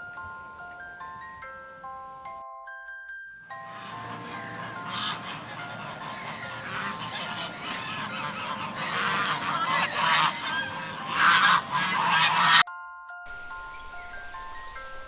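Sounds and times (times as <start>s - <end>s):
soft music with chime-like notes: 0.0s - 15.0s
birds calling: 3.5s - 12.7s, 13.3s - 15.0s.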